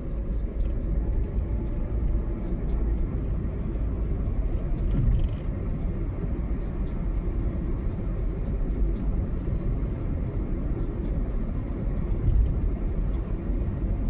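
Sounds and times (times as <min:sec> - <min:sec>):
car road and engine rumble: 0:00.0 - 0:14.0.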